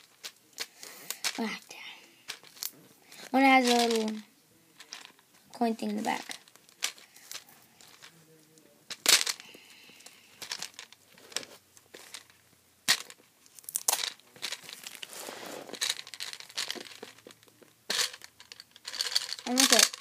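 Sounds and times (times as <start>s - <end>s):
plastic packaging crinkling: 13.5s - 20.0s.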